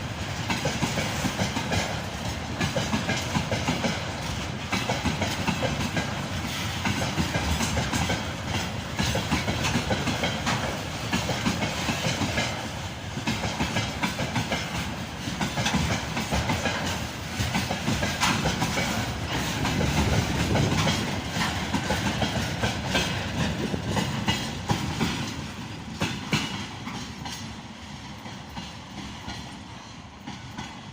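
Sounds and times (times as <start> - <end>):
train wheels clattering over rail joints: 0.0 - 30.9.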